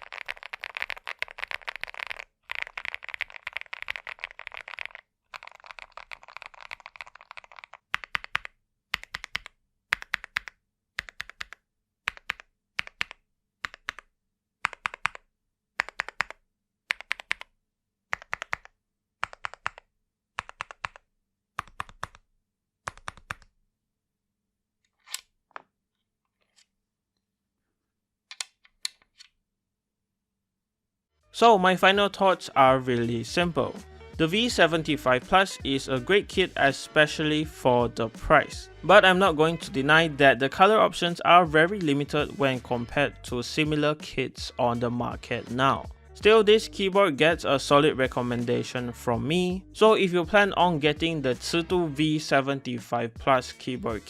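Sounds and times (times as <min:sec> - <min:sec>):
typing on mechanical keyboard: 0:00.0 - 0:14.1, 0:14.7 - 0:15.2, 0:15.8 - 0:17.5, 0:18.1 - 0:21.0, 0:21.6 - 0:22.2, 0:22.9 - 0:23.5.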